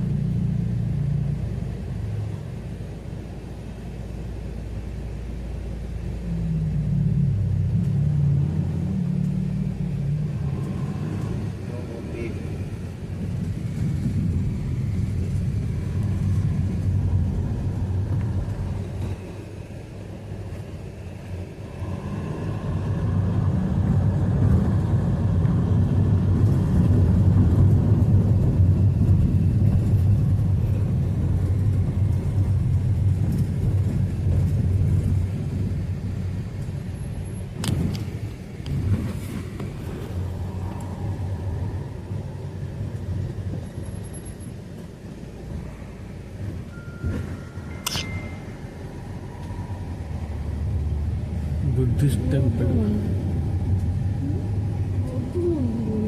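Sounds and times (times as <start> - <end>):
car rumbling on road: 0.0 - 56.0
sharp click: 47.8 - 48.3.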